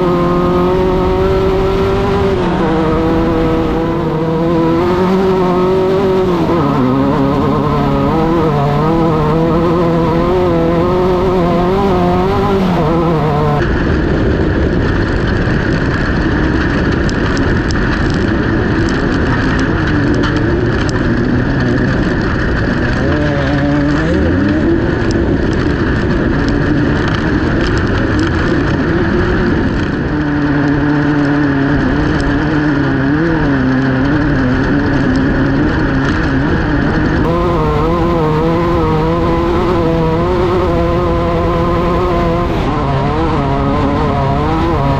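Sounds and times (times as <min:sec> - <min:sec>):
car rattling over rough ground: 0:00.0 - 0:44.9
race car engine revving: 0:00.0 - 0:44.9.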